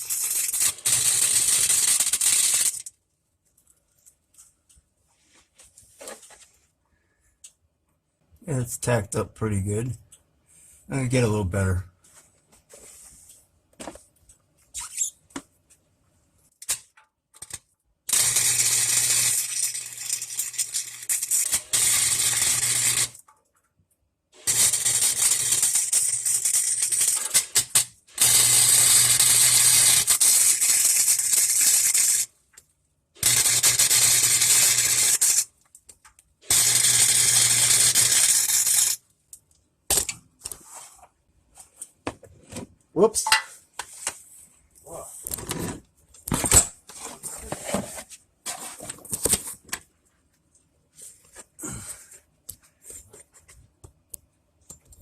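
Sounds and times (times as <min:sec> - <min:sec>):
welding arc crackling and sizzling: 0:00.0 - 0:02.9, 0:16.6 - 0:23.2, 0:24.4 - 0:32.3, 0:33.2 - 0:35.5, 0:36.5 - 0:39.0.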